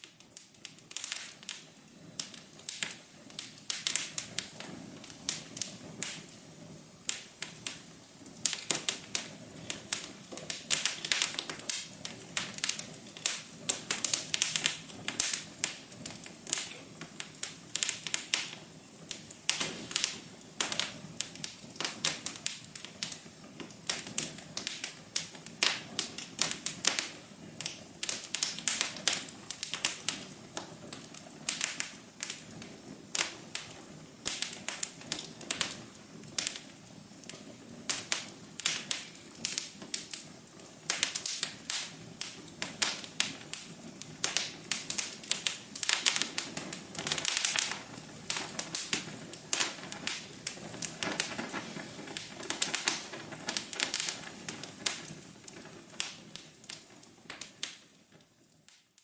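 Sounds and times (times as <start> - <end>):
wood fire crackling: 0.0 - 59.0.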